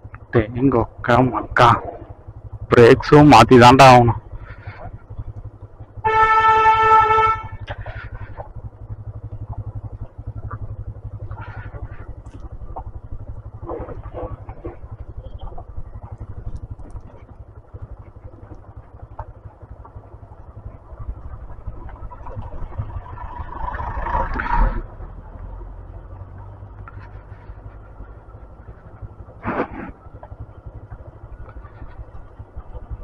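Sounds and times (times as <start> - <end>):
motorcycle engine running: 0.0 - 33.0
horn honking: 6.0 - 7.9.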